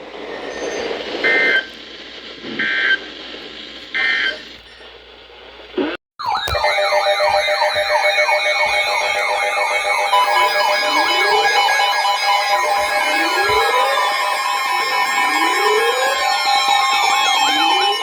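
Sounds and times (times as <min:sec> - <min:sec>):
harsh two-tone data bursts: 0:05.8 - 0:18.0
chord of steady tones: 0:06.2 - 0:18.0
warbling electronic alert tone: 0:06.2 - 0:18.0.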